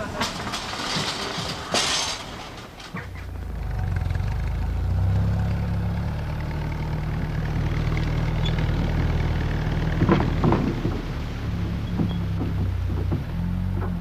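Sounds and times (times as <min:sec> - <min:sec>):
engine humming at low speed: 0:03.0 - 0:14.0.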